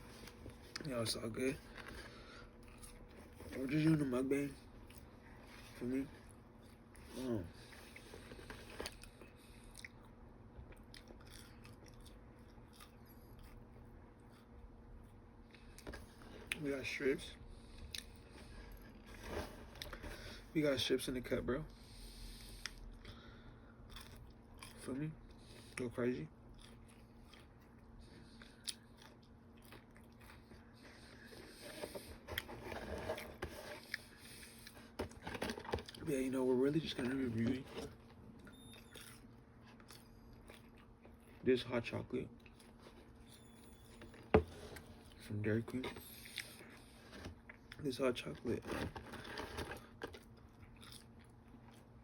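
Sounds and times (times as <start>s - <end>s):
close-up eating and chewing: 0.0s - 20.5s, 21.7s - 52.0s
person chewing: 6.6s - 14.5s, 23.9s - 24.8s, 26.5s - 36.0s, 38.4s - 41.4s, 50.0s - 51.9s.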